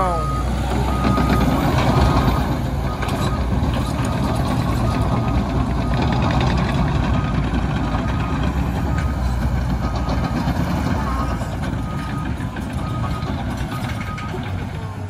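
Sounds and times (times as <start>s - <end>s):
reversing alarm beeps: 0.0s - 14.8s
bulldozer diesel engine running: 0.0s - 15.0s.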